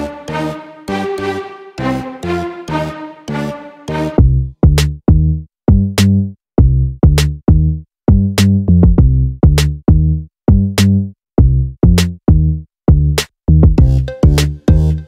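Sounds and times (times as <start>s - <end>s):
electronic music with drum beat: 3.3s - 15.0s.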